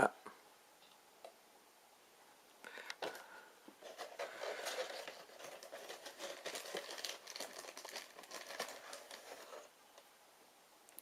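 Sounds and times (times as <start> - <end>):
plastic packaging crinkling: 3.0 - 9.7.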